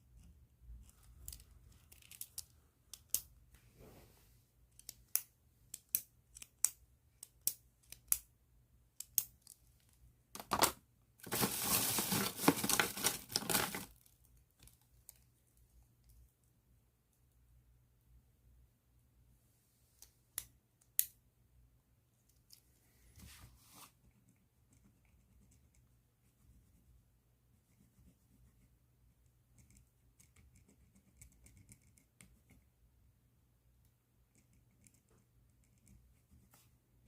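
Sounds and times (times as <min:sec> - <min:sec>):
plastic bag crackling and crinkling: 0:11.2 - 0:14.0.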